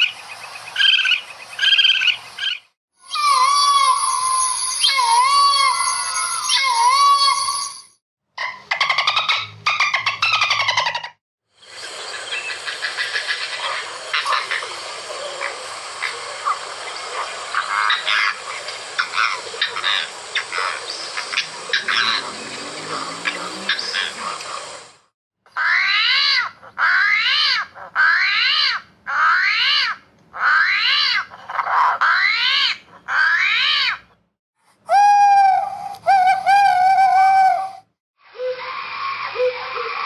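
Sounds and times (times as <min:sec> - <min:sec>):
rising and falling animal calls: 0:00.8 - 0:07.6, 0:12.3 - 0:24.9, 0:34.9 - 0:40.0
hiss: 0:11.6 - 0:21.7.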